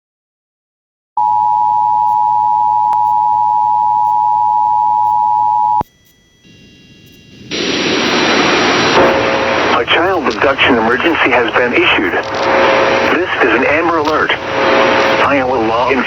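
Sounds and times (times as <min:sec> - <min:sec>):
loud steady hiss: 0:06.4 - 0:16.0.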